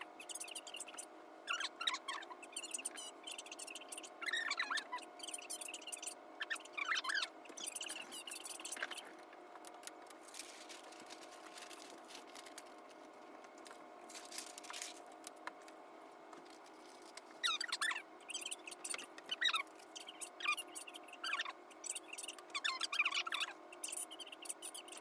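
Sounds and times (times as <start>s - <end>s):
high squeaky chirping voices: 0.0s - 12.8s, 16.8s - 25.0s
faint steady hum: 0.0s - 25.0s
rustles: 10.1s - 15.1s.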